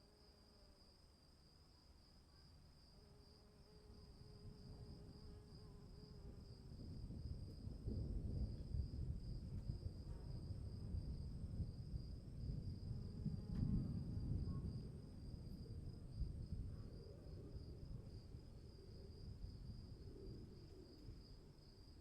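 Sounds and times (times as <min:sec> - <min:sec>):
distant thunder rumbling: 0:06.8 - 0:16.7.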